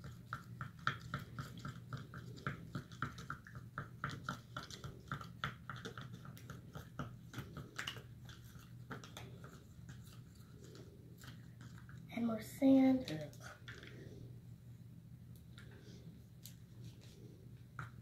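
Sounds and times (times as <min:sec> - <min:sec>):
slime squelching: 0:00.0 - 0:14.4.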